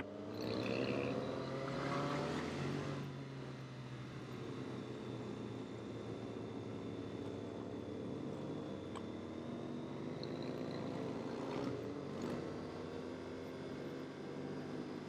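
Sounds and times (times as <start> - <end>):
motorcycle engine running: 7.2 - 15.0.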